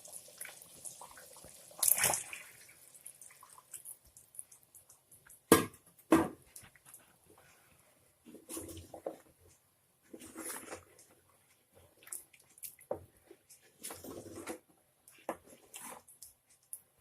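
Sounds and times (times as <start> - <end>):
liquid pouring into a pot: 0.0 - 5.0
splashing and dripping: 0.0 - 5.0.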